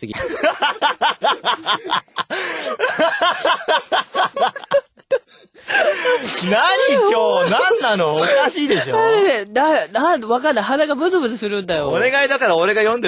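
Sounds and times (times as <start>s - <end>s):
hearty laughter: 0.1s - 6.2s.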